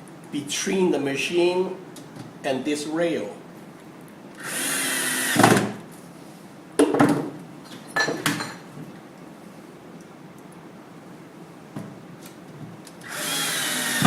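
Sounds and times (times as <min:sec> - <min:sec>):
power drill driving screws: 0:04.4 - 0:05.4, 0:13.0 - 0:14.0.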